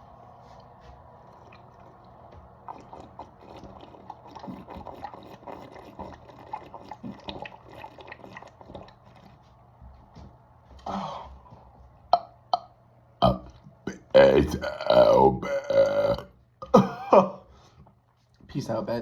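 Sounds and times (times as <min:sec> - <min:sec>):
person gulping liquid: 0:00.4 - 0:09.5, 0:12.1 - 0:17.1.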